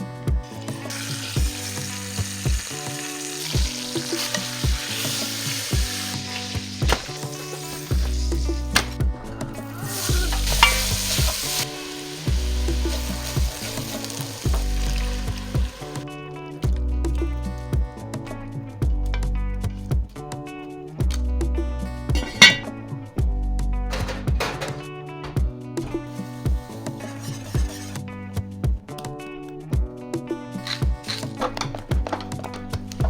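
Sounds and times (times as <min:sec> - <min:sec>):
background music with steady beat: 0:00.0 - 0:33.0
food sizzling in hot oil: 0:00.4 - 0:09.0, 0:09.6 - 0:16.0.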